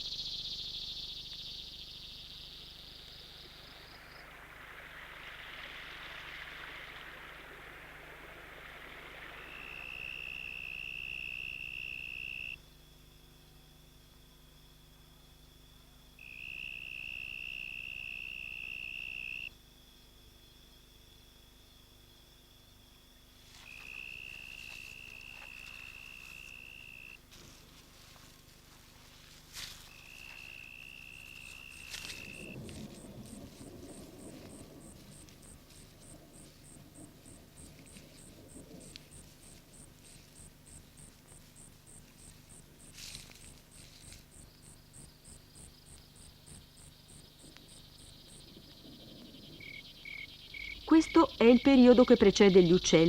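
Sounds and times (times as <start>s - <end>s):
insects trilling: 0.0s - 53.0s
faint ticks: 29.5s - 51.2s.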